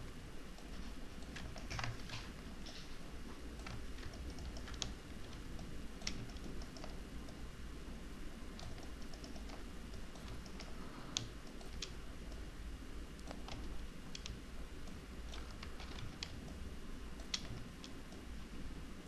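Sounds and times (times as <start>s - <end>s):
low steady hum: 0.0s - 19.0s
computer mouse and keyboard clicks: 0.6s - 3.0s, 3.6s - 7.4s, 8.5s - 12.5s, 13.2s - 16.6s, 17.2s - 18.4s.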